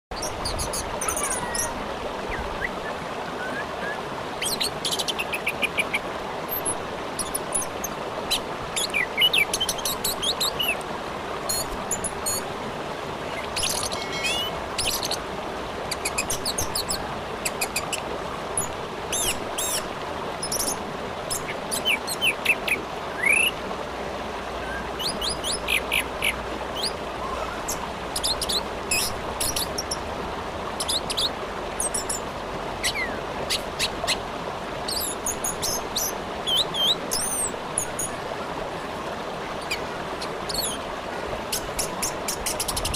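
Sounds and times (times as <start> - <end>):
thrush singing rapid chirps and trills: 0.1 - 2.8, 13.3 - 15.2
river flowing: 0.1 - 42.9.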